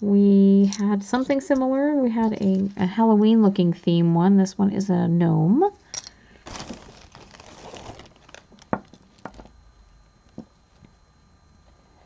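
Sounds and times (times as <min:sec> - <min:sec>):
plastic bag crinkling: 0:06.3 - 0:09.5.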